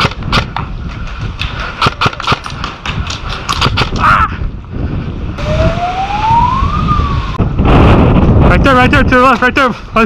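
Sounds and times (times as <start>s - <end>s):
low wind rumble on microphone: 0.0s - 10.0s
siren rising in pitch: 5.4s - 7.5s.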